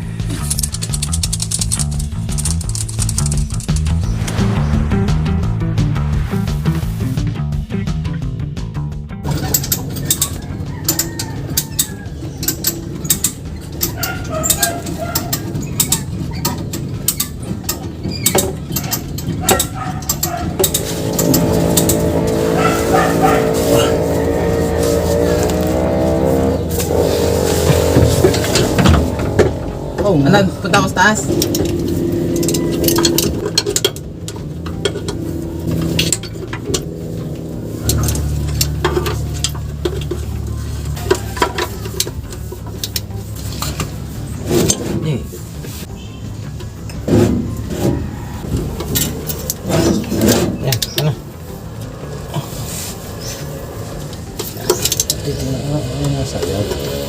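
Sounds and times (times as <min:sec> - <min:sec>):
metal hand tools clanking: 0:09.3 - 0:45.3, 0:47.8 - 0:57.0.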